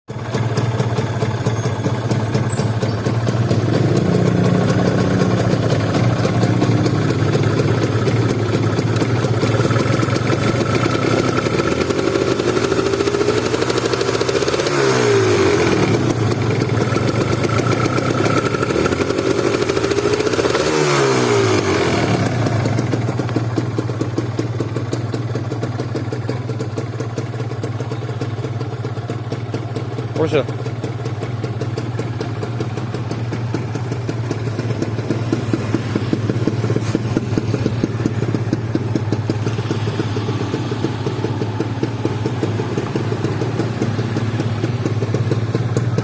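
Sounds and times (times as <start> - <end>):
motorcycle engine revving: 0.2 - 46.0.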